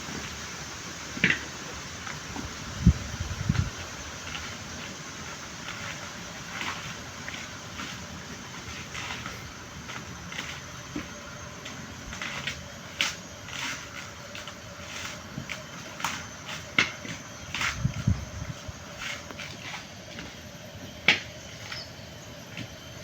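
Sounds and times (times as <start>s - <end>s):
steady background hiss: 0.0s - 23.0s
coconut husk fibres tearing: 0.2s - 20.4s.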